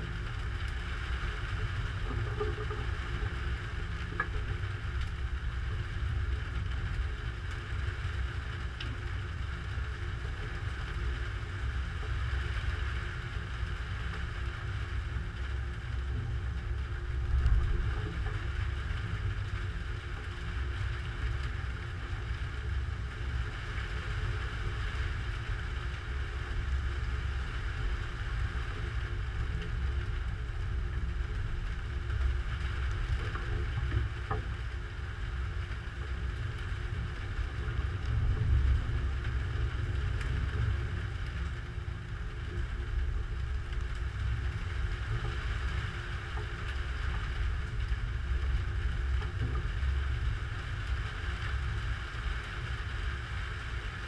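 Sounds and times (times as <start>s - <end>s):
low rumble of wind: 0.0s - 54.0s.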